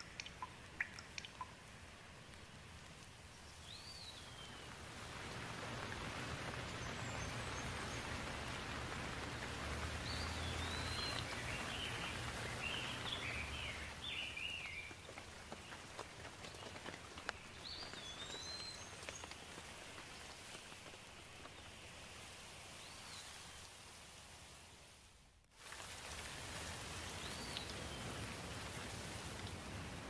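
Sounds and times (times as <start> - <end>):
steady rain falling: 0.0 - 30.0
bird chirping: 10.0 - 15.0.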